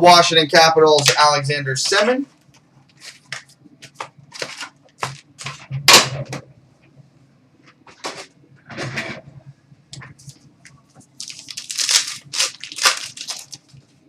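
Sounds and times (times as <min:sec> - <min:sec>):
packaging rustling and snapping: 0:02.9 - 0:05.6, 0:11.1 - 0:13.8.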